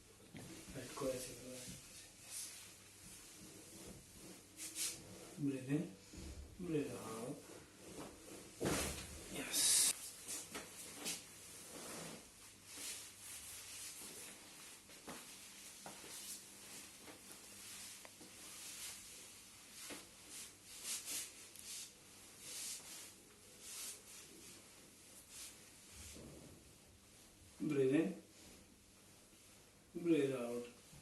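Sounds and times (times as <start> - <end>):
clothing rustling on padding: 6.9 - 29.8.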